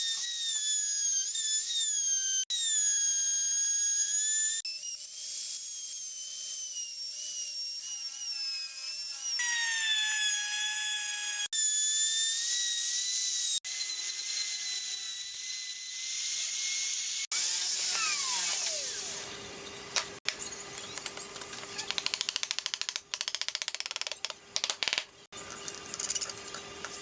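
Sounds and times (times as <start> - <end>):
power tool motor whine: 17.3 - 19.8.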